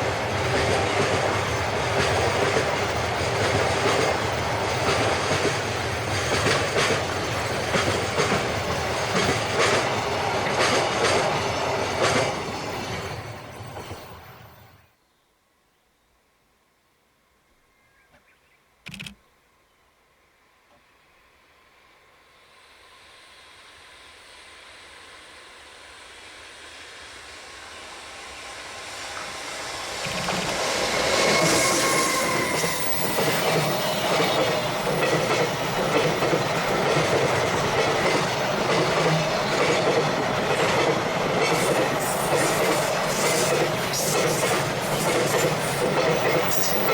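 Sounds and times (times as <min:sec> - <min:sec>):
train wheels clickety-clack on rails: 0:00.0 - 0:14.2, 0:28.7 - 0:46.9.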